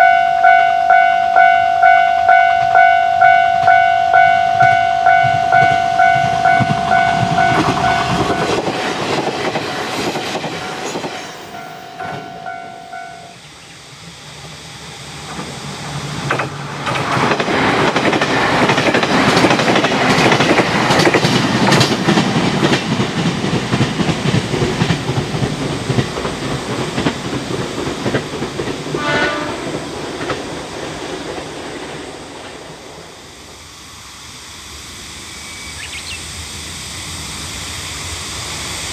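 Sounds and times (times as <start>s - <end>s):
brief pulsing tone: 0.0s - 8.7s, 10.6s - 13.4s
level crossing alarm dinging: 0.0s - 13.4s
train wheels clattering: 4.5s - 13.2s, 15.2s - 33.2s.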